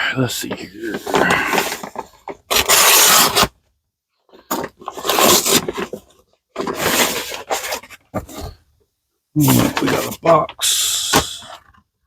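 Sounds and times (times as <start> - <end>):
cardboard being scraped and torn: 1.3 - 3.5, 4.8 - 6.0, 6.6 - 8.0.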